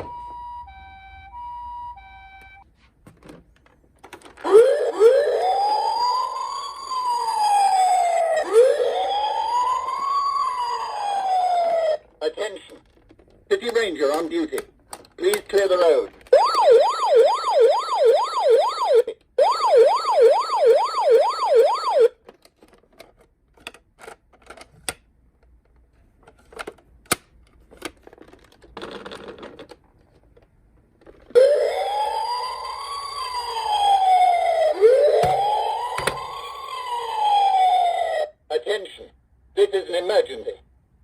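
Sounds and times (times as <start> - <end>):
toy siren wailing: 0.0 - 2.6, 4.4 - 12.0, 16.3 - 22.1, 31.4 - 38.4
toy siren yelping: 0.0 - 2.6, 4.4 - 12.0, 16.3 - 22.2, 31.4 - 38.4.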